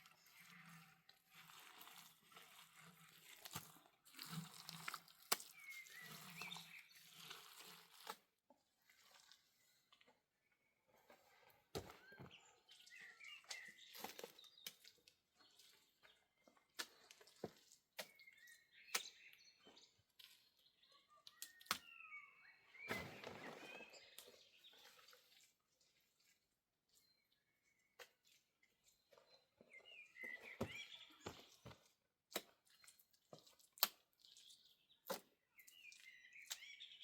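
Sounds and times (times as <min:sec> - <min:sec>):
bird chirps: 0:12.0 - 0:14.6, 0:18.1 - 0:24.8, 0:28.9 - 0:31.7.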